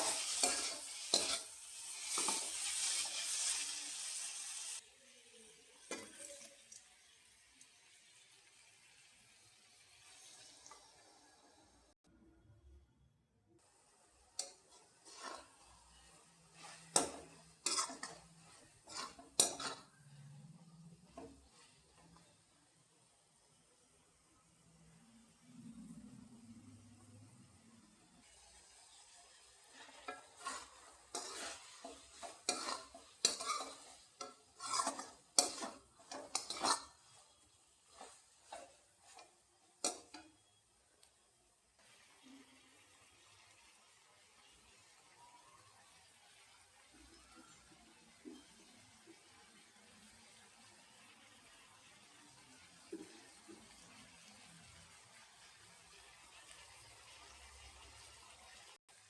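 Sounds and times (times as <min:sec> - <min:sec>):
utensil scraping a pan: 0:00.0 - 0:03.6, 0:14.4 - 0:22.3, 0:29.6 - 0:40.3.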